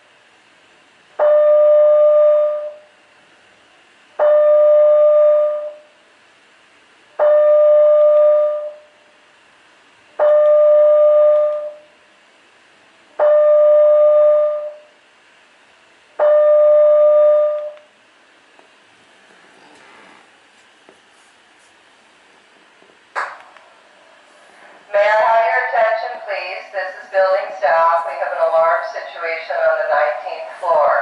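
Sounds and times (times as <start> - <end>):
fire alarm chime tone: 1.2 - 2.9, 4.2 - 6.0, 7.2 - 9.0, 10.2 - 11.9, 13.2 - 14.9, 16.2 - 17.8.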